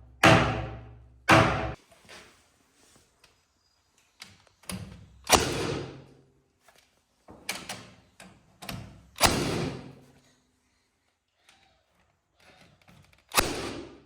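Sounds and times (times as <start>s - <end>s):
sharp wooden knocks and thuds: 0.1s - 1.8s.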